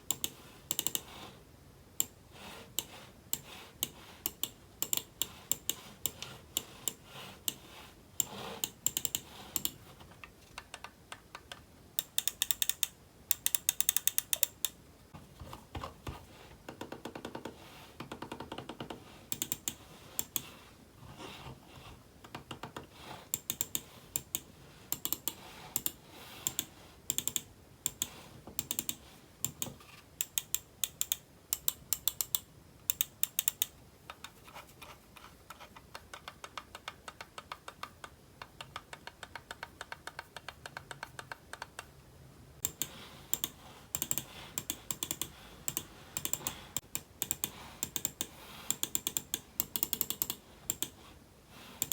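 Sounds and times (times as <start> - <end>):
typing on a keyboard: 0.1 - 1.0, 4.3 - 5.8, 8.2 - 9.8, 10.5 - 14.7, 16.8 - 20.5, 23.4 - 34.3, 35.5 - 41.9, 42.6 - 50.9.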